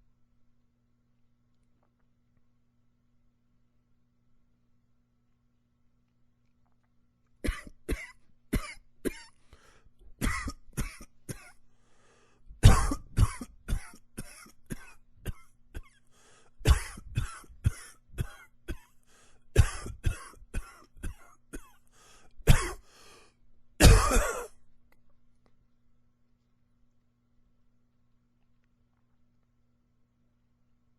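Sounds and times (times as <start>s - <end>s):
man coughing: 7.4s - 9.4s, 10.2s - 11.6s, 12.6s - 16.0s, 16.6s - 18.9s, 19.6s - 21.8s, 22.4s - 22.9s, 23.8s - 24.6s.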